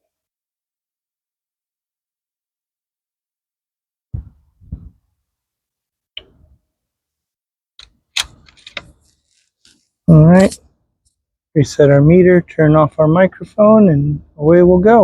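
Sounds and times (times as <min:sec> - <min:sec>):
sharp clicks and knocks: 0:07.8 - 0:10.6.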